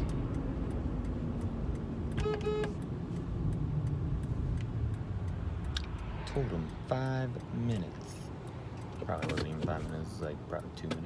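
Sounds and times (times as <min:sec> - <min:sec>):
car engine idling: 0:00.0 - 0:11.0
short beeps: 0:02.2 - 0:02.8.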